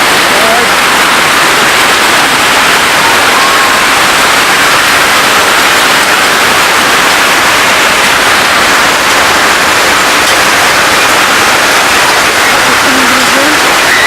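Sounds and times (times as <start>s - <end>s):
heavy rain and hail: 0.0s - 14.0s.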